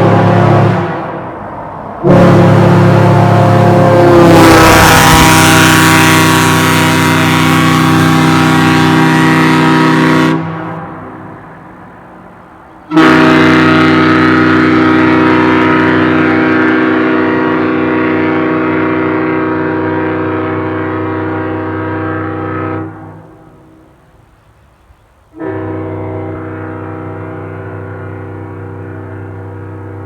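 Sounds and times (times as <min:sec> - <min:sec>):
ship horn blasts: 0:00.0 - 0:24.3, 0:25.3 - 0:30.0.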